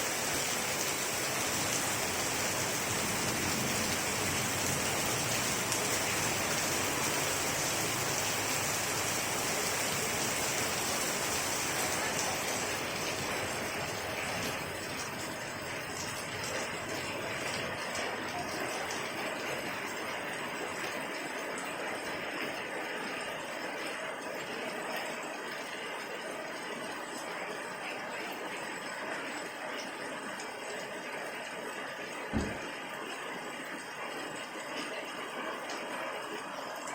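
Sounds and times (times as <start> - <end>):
short low thump: 32.3 - 32.7.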